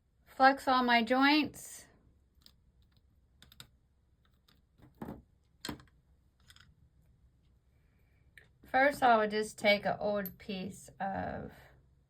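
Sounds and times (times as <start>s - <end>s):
small tools clicking and tapping: 2.4s - 6.8s.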